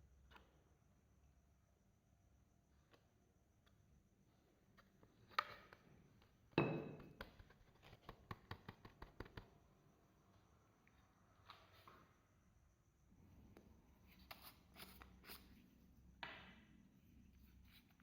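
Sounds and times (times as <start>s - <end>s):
clay squishing: 2.2s - 9.7s, 13.4s - 18.0s.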